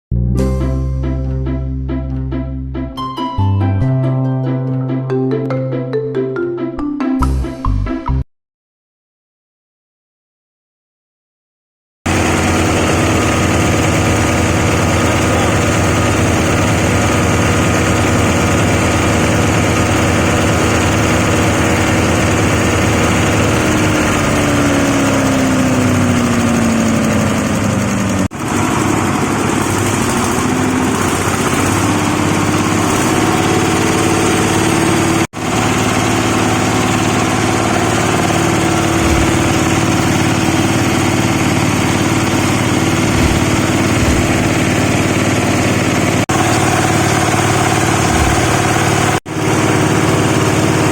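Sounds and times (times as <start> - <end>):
grinding mill droning: 12.1 - 50.9.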